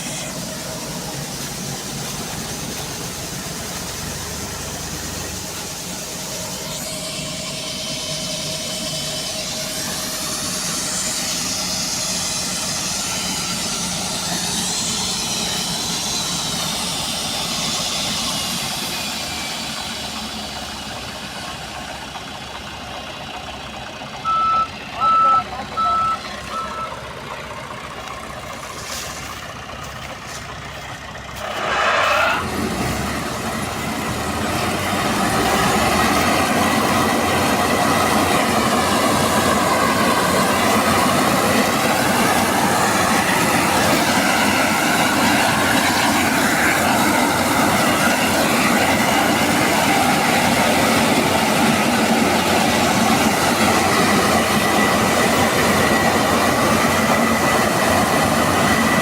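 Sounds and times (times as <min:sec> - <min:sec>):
combine harvester engine running: 0:00.0 - 0:59.0
reversing beeps: 0:24.2 - 0:27.0.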